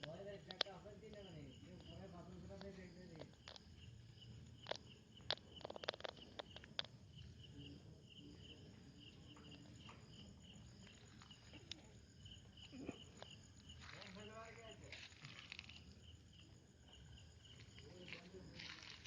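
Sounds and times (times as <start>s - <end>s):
sharp clicks: 0.0s - 1.2s
cricket chirping: 0.0s - 19.0s.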